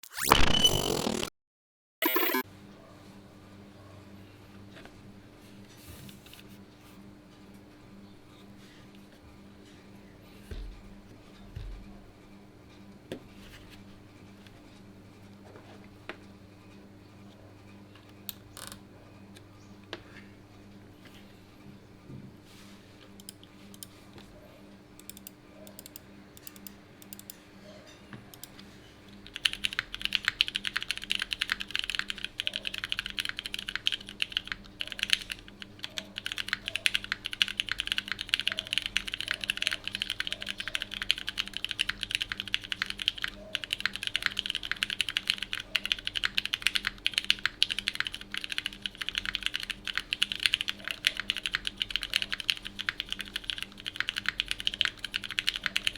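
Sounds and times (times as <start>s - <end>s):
mechanical keyboard typing: 25.0s - 27.4s, 29.2s - 55.9s.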